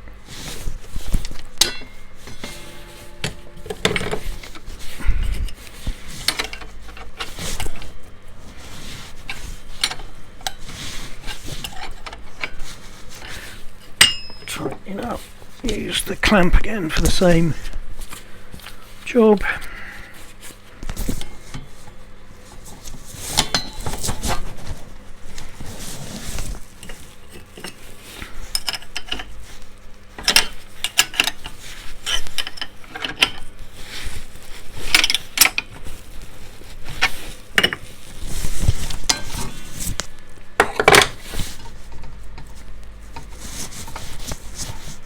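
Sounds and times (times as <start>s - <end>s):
spanner clinking on metal: 14.0s - 14.7s.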